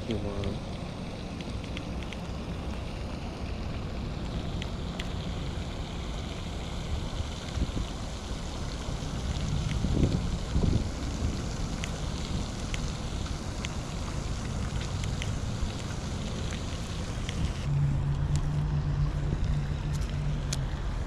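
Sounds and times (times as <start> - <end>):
wind on microphone: 7.5 - 8.0, 9.1 - 12.9
faint ticks: 12.7 - 13.8.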